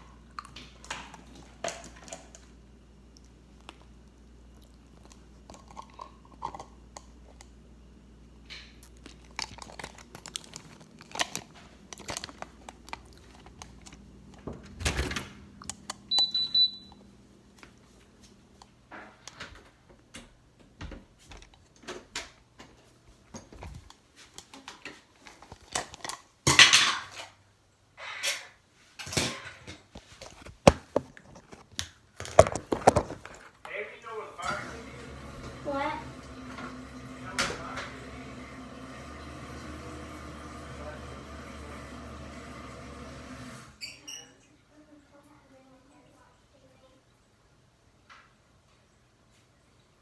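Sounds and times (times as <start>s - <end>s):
small containers clattering: 8.5s - 14.5s, 29.0s - 33.7s
short high beep: 16.1s - 16.9s.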